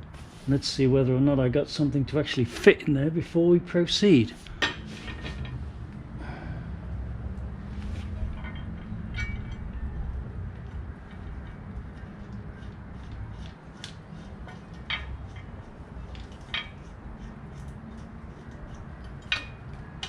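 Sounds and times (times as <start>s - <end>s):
steady low hum: 0.0s - 20.0s
metal hand tools clinking: 19.0s - 20.0s.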